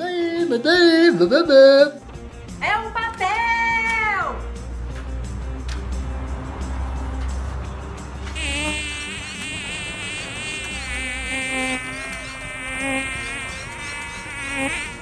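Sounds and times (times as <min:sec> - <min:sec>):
wavering buzz: 0:08.4 - 0:15.0.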